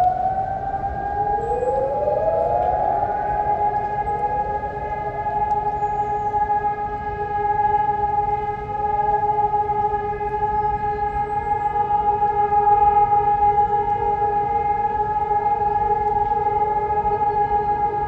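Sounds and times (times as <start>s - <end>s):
higher steady siren tone: 0.0s - 10.2s
civil defence sirens steady tone: 0.0s - 18.0s
faint sirens gliding up in pitch: 0.0s - 18.0s.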